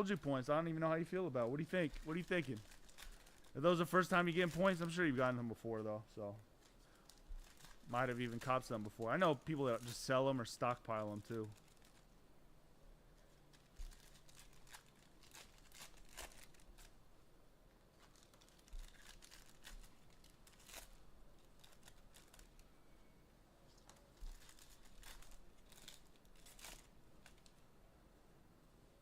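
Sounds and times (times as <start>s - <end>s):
foil wrappers crinkling and tearing: 0.0s - 5.6s, 6.6s - 12.1s, 13.2s - 17.0s, 17.9s - 22.7s, 23.7s - 27.6s.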